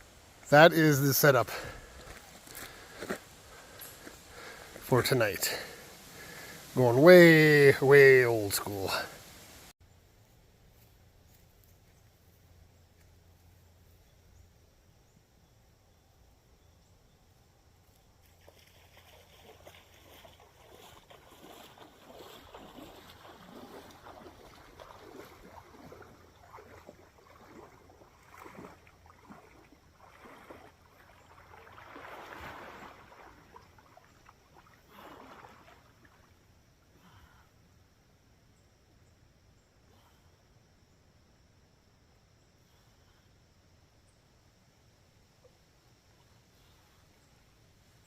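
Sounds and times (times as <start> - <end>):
water splashing and sloshing: 0.0 - 9.7, 18.2 - 36.9.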